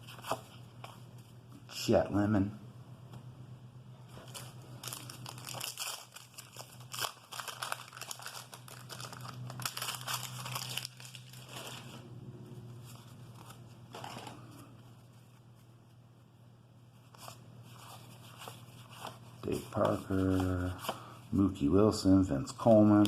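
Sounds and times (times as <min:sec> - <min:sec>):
low steady hum: 0:00.0 - 0:23.0
wax paper wrapper crinkling: 0:04.1 - 0:12.0.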